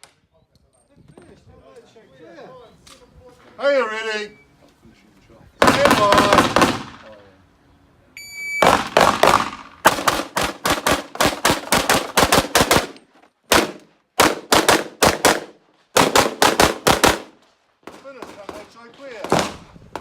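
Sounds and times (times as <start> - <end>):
pistol shots with echo: 5.6 - 7.2, 8.6 - 17.3
shot timer beep: 8.2 - 8.7.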